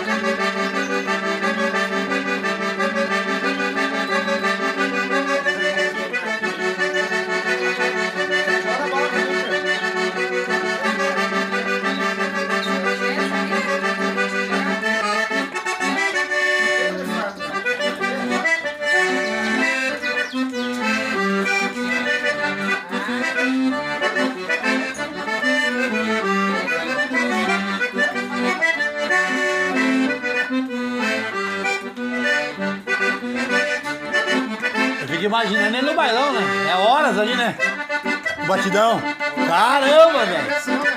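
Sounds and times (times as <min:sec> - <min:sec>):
accordion playing: 0:00.0 - 0:40.9.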